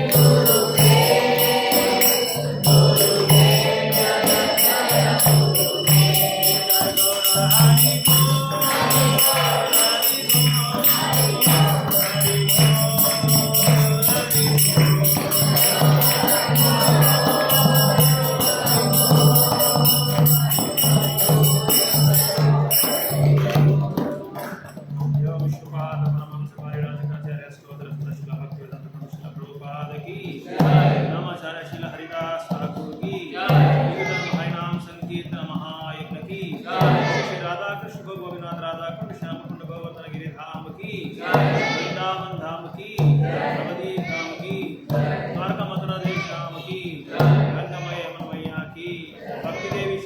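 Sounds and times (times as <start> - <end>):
low repeated beat: 0.0 - 24.4
group chanting: 0.0 - 24.6, 30.4 - 31.4, 33.1 - 34.6, 36.6 - 37.6, 41.2 - 42.3, 43.0 - 48.2, 49.2 - 50.0
hand cymbals ringing: 0.0 - 25.1.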